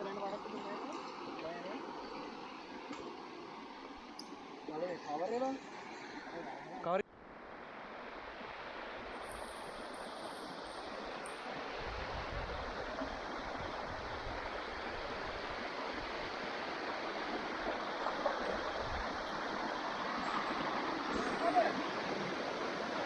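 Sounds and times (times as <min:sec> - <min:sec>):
stream cascade rushing: 0:00.0 - 0:23.0.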